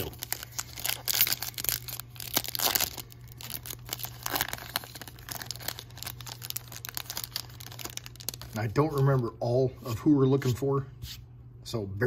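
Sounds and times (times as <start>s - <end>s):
foil wrapper tearing and crinkling: 0.0s - 9.2s.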